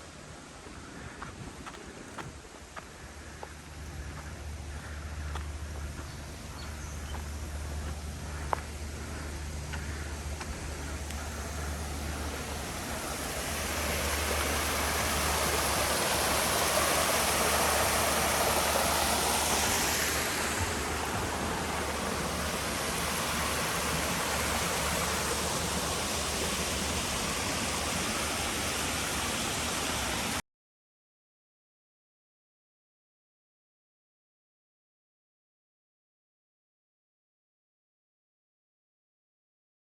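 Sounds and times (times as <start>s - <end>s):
waterfall roaring: 10.2s - 30.4s.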